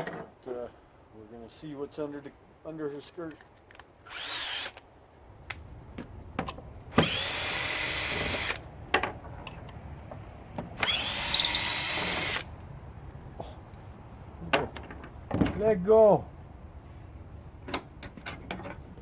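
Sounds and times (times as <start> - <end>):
power drill spinning: 4.1 - 4.8, 7.0 - 8.6, 10.8 - 12.5.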